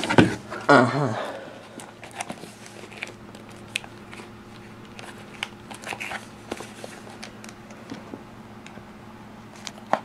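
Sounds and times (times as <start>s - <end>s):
steady low hum: 0.0s - 10.0s
cardboard box being handled: 4.1s - 7.3s.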